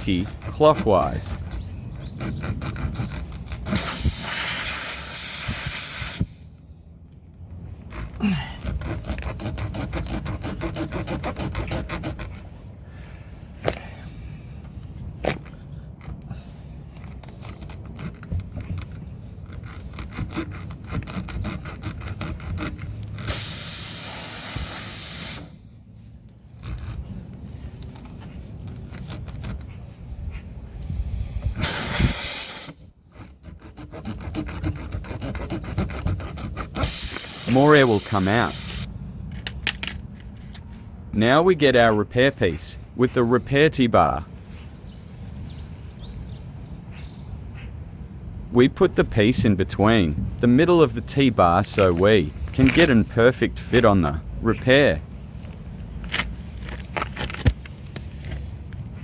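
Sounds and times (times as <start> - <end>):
tyre rasp scraping: 0.0 - 6.4, 7.6 - 12.8, 15.0 - 25.8, 26.5 - 38.9
air hissing from tyre: 3.6 - 6.6, 23.1 - 26.2, 30.8 - 33.0, 36.8 - 38.9.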